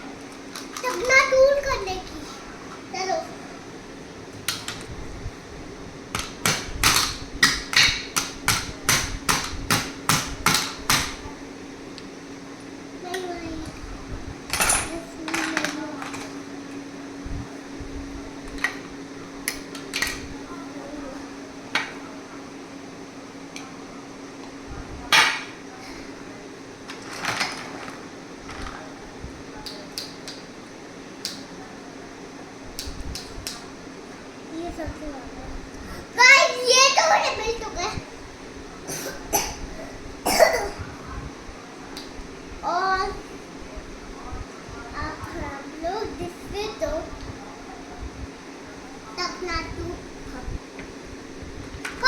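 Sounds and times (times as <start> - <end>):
steady low hum: 0.0 - 52.0
hard objects knocking and clattering: 26.9 - 28.8.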